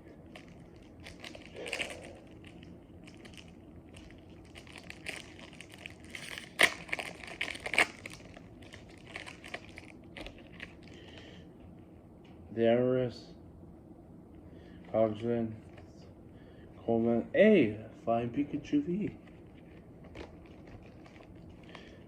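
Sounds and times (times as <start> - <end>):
foil wrapper crinkling and tearing: 0.0 - 11.3, 19.2 - 22.0
cards shuffling: 6.0 - 7.9.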